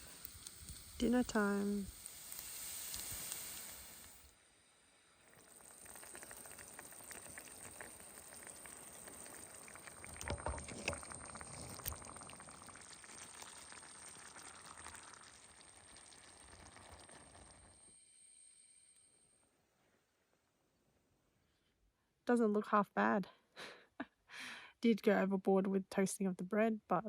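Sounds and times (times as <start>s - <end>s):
food sizzling in a pan: 0.0s - 4.3s, 4.9s - 18.9s.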